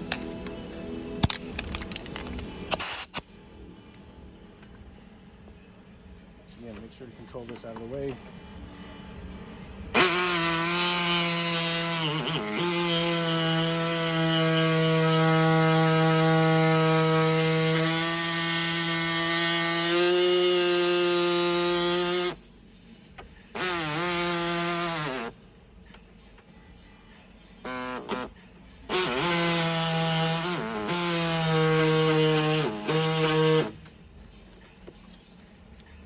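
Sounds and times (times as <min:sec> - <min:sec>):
electric power tool whining: 0:10.0 - 0:22.4, 0:23.6 - 0:25.3, 0:27.7 - 0:28.3, 0:28.9 - 0:33.8.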